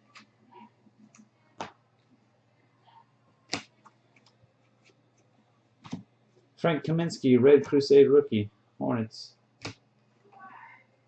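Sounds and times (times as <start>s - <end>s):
sharp card clicks: 9.6s - 9.8s.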